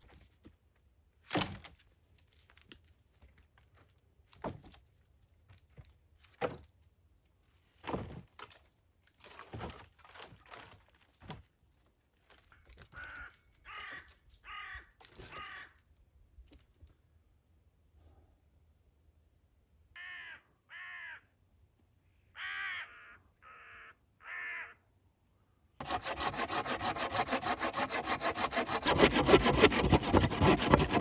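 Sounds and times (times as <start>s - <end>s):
crow cawing: 13.0s - 15.8s, 20.0s - 21.3s, 22.4s - 24.8s.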